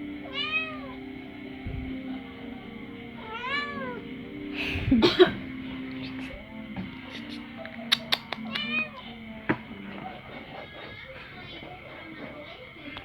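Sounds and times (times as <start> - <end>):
background music or hum: 0.0 - 12.0
cat meowing: 0.2 - 1.0, 3.2 - 4.0, 7.0 - 9.2.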